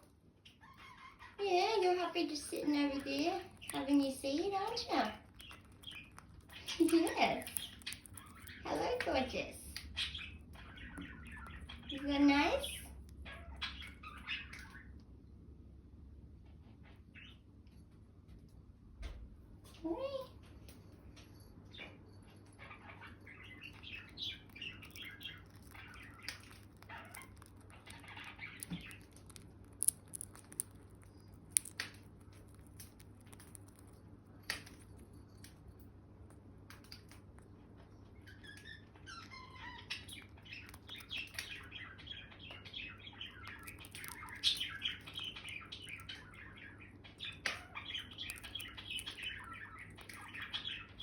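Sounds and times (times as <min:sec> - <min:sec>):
parakeet chattering: 0:00.5 - 0:14.9, 0:22.6 - 0:33.9, 0:38.2 - 0:51.0.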